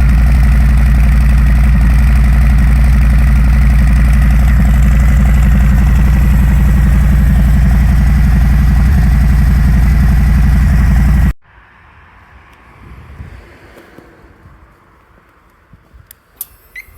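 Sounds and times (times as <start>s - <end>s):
motorcycle engine idling: 0.0s - 11.4s
faint wind-like noise: 11.4s - 16.4s.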